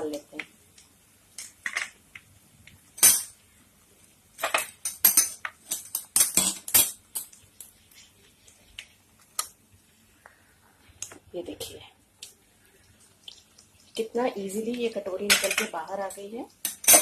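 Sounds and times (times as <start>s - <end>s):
metal utensils clinking on steel: 4.4s - 7.3s, 15.2s - 15.8s, 16.6s - 17.0s.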